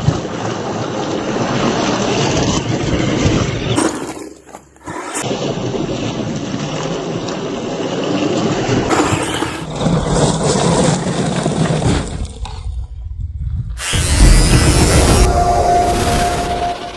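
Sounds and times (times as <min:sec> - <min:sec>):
toy car motor and tyres: 0:13.8 - 0:16.9.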